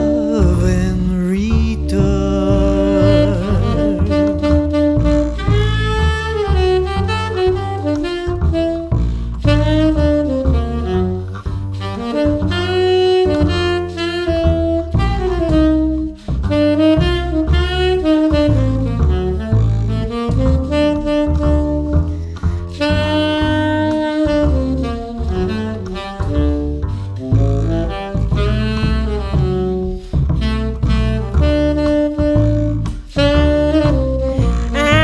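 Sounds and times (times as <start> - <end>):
solo melody instrument: 0.0 - 16.0, 33.7 - 35.0
bass accompaniment: 0.0 - 35.0.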